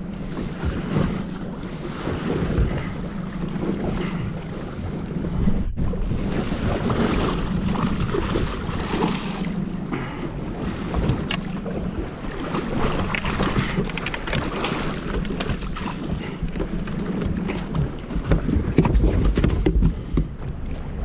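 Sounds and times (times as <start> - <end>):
sea water splashing: 0.0 - 21.0
wind buffeting microphone: 0.0 - 21.0
knocks on boat: 12.8 - 20.8.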